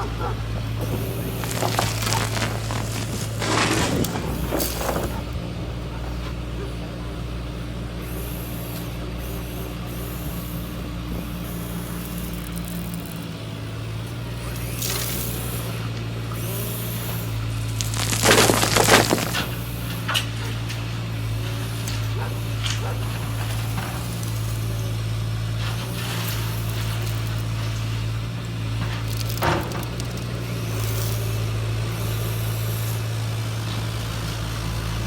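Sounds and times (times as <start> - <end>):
crunching scraping bursts: 0.0 - 6.0, 14.6 - 31.5.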